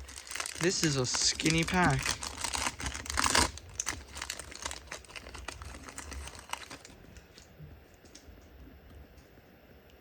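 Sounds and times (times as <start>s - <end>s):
foil wrapper crinkling: 0.0s - 7.5s.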